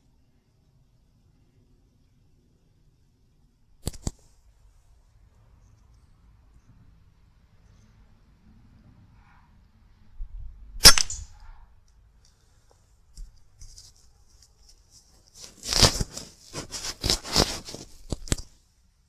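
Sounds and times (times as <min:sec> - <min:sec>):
sharp clicks and rustling: 0:03.8 - 0:04.4, 0:13.1 - 0:18.6
air rifle shot: 0:10.8 - 0:11.4.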